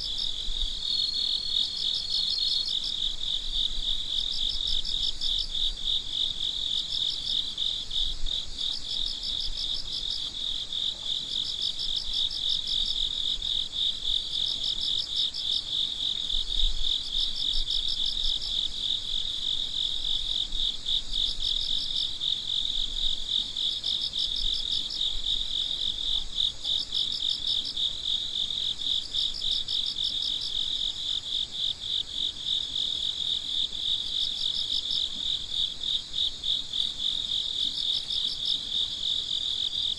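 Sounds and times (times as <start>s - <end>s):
cricket pulsing trill: 0.0s - 39.9s
higher cricket chirping: 0.0s - 39.9s.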